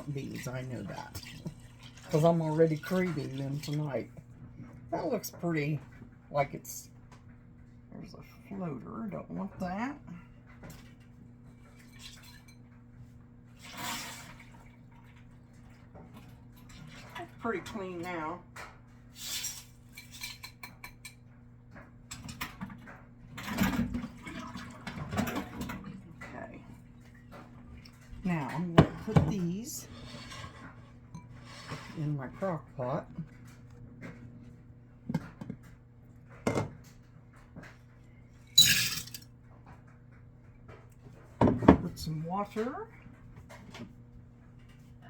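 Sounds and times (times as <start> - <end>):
kitchenware clinking and rattling: 19.4 - 21.2, 23.4 - 25.9, 38.6 - 39.2.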